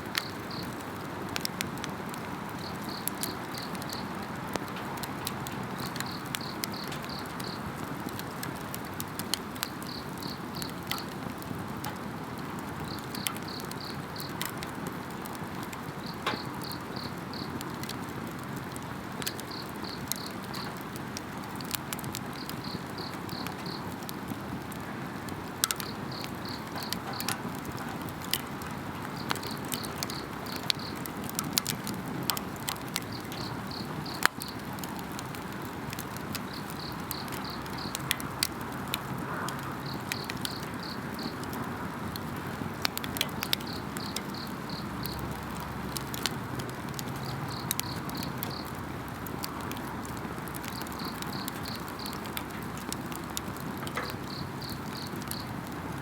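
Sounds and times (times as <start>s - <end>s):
campfire crackling and popping: 0.0s - 56.0s
insect chirping: 2.6s - 4.2s, 5.8s - 7.7s, 9.6s - 10.8s, 12.9s - 14.4s, 16.0s - 17.6s, 22.4s - 23.9s, 25.8s - 27.3s, 29.2s - 31.0s, 33.1s - 34.7s, 36.5s - 38.1s, 39.8s - 41.4s, 43.6s - 45.3s, 47.1s - 48.8s, 50.7s - 52.2s, 54.1s - 55.6s.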